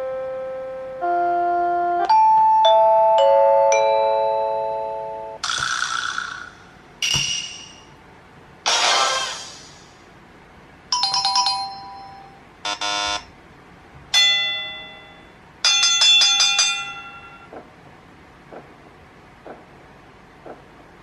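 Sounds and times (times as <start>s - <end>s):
bell ding: 11.0s - 12.4s, 14.2s - 17.5s
chime notes: 11.0s - 12.4s
buzzer tone: 12.7s - 13.3s.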